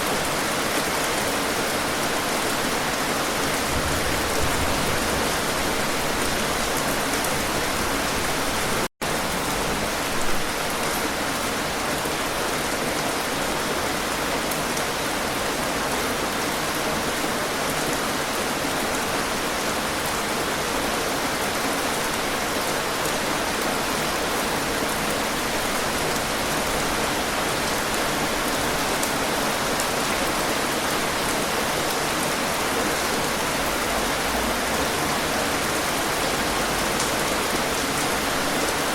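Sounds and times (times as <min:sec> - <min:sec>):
heavy rain falling: 0:00.0 - 0:38.9.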